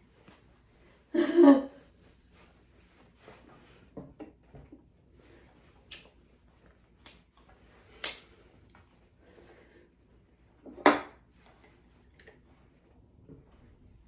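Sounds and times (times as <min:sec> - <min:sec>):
kitchenware knocking and clattering: 0:10.7 - 0:11.2.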